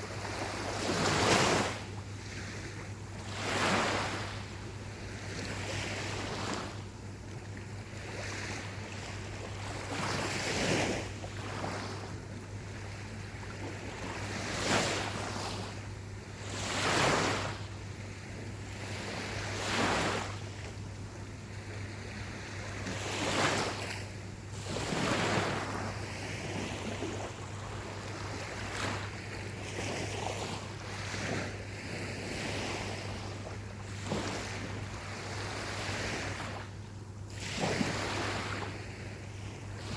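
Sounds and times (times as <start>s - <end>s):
steady surf hiss: 0.0s - 11.4s
ocean waves breaking on beach: 0.0s - 39.9s.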